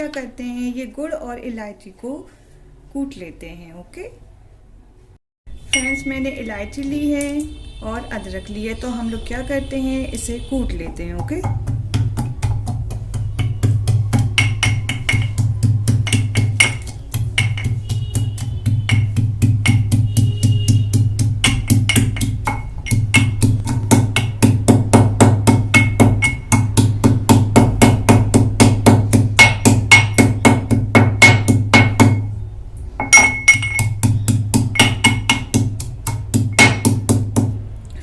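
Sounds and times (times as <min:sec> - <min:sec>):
pestle pounding in a mortar: 0:10.2 - 0:32.4, 0:33.0 - 0:37.6.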